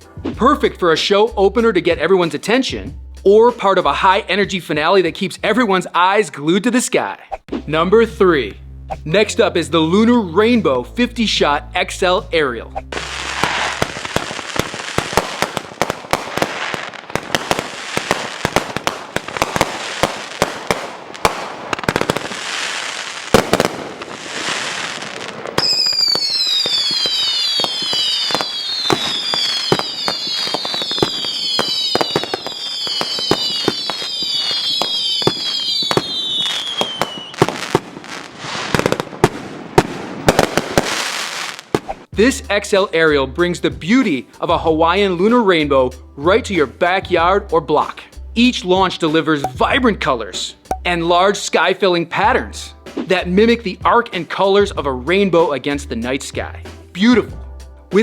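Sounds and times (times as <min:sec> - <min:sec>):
firework pops and crackling: 0:12.9 - 0:42.1
falling firework whistles: 0:13.0 - 0:15.6, 0:21.2 - 0:39.0
heavy firework bangs: 0:13.0 - 0:42.1.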